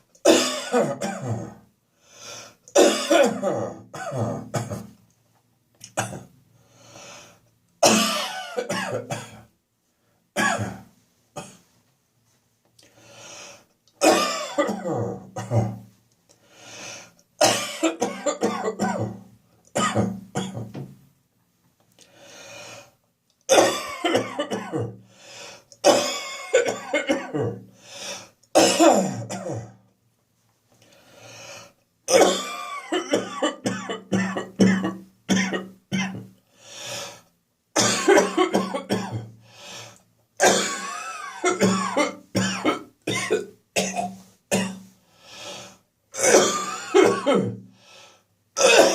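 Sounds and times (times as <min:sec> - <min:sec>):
man coughing phlegmy: 0:00.2 - 0:01.6, 0:02.7 - 0:05.0, 0:05.9 - 0:06.3, 0:07.8 - 0:09.5, 0:10.4 - 0:11.6, 0:14.0 - 0:15.8, 0:17.4 - 0:20.8, 0:23.5 - 0:25.0, 0:25.8 - 0:27.6, 0:28.6 - 0:29.8, 0:32.1 - 0:36.3, 0:37.8 - 0:39.3, 0:40.4 - 0:44.8, 0:46.2 - 0:47.6, 0:48.6 - 0:48.9
man clearing throat: 0:00.3 - 0:01.6, 0:02.8 - 0:04.9, 0:10.4 - 0:11.6, 0:14.0 - 0:15.8, 0:17.4 - 0:20.8, 0:28.6 - 0:29.8, 0:37.8 - 0:39.3, 0:40.4 - 0:44.8, 0:46.2 - 0:47.6, 0:48.6 - 0:48.9.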